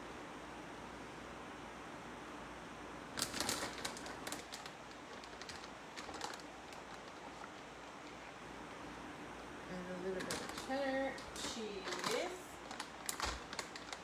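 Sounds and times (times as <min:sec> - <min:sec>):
plastic bag crinkling: 0:03.2 - 0:08.3, 0:10.1 - 0:14.0.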